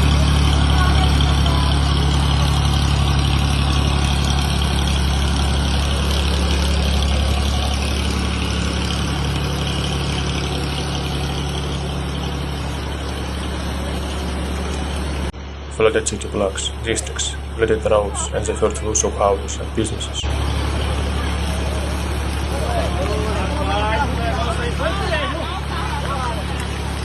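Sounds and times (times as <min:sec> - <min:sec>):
vehicle engine running: 0:00.0 - 0:27.0.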